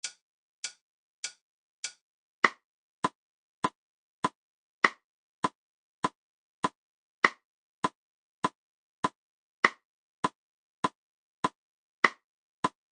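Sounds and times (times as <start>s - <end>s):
metronome ticking: 0.0s - 2.0s.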